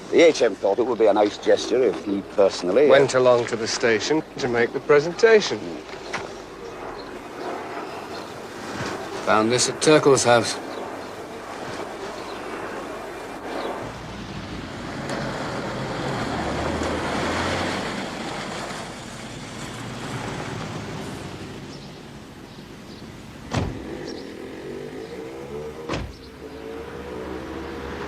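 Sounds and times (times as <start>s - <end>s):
road noise: 0.0s - 28.0s
car engine: 13.8s - 21.8s, 23.2s - 28.0s.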